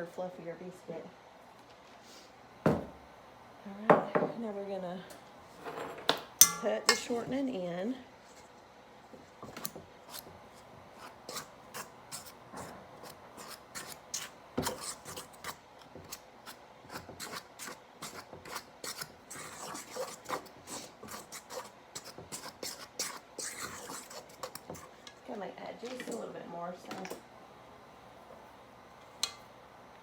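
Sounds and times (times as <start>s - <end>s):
utensil scraping mixing bowl: 9.2s - 25.2s.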